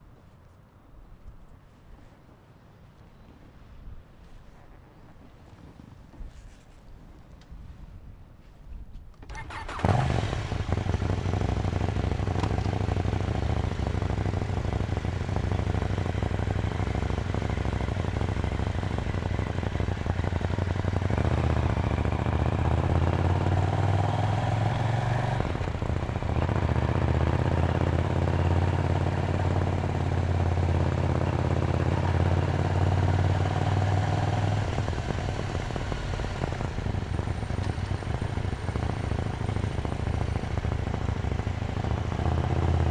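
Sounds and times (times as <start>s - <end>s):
motorcycle engine starting and running: 9.2s - 42.9s.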